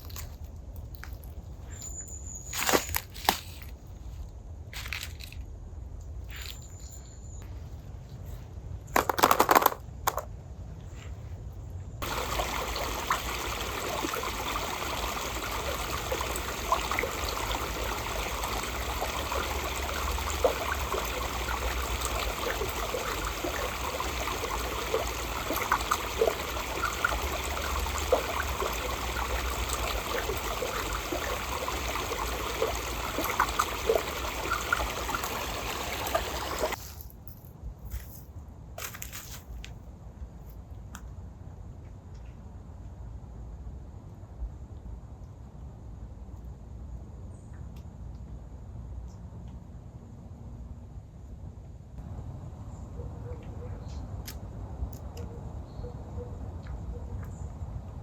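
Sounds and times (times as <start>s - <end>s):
water trickling and bubbling: 12.0s - 36.8s.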